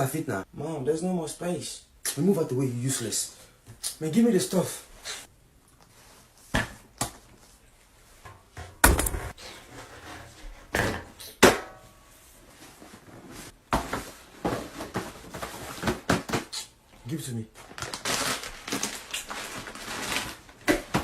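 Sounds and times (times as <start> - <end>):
thumps and bangs packing a suitcase: 8.6 - 9.4, 13.6 - 16.5.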